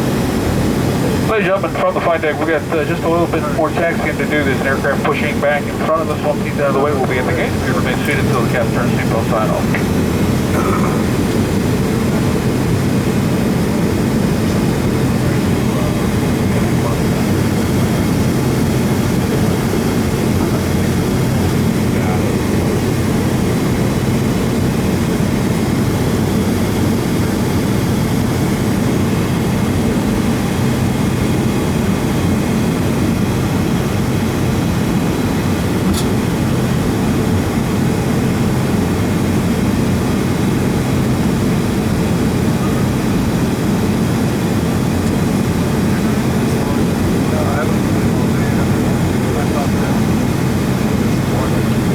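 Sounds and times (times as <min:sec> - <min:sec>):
jet engines idling in cabin: 0:00.0 - 0:51.9.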